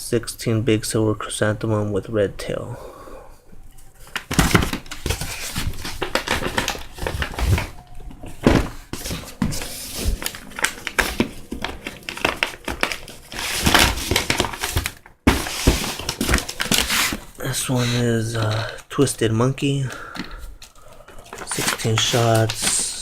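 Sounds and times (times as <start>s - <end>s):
packaging crinkling and rustling: 3.8s - 18.9s, 20.1s - 23.0s.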